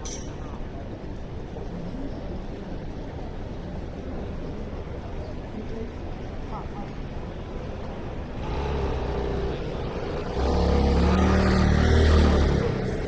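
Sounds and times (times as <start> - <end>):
vehicle engine passing: 8.3 - 13.0.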